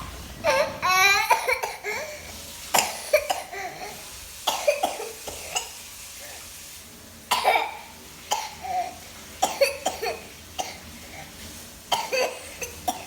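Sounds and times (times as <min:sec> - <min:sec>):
child crying: 0:00.0 - 0:02.1
child coughing: 0:00.0 - 0:02.2, 0:02.8 - 0:05.8, 0:07.3 - 0:10.9, 0:11.9 - 0:13.0.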